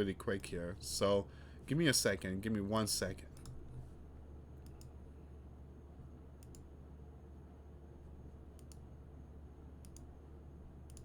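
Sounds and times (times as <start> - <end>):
low steady hum: 0.0 - 11.0
computer mouse clicks: 3.3 - 3.8, 4.6 - 5.0, 6.4 - 6.7, 8.5 - 8.9, 9.8 - 10.1.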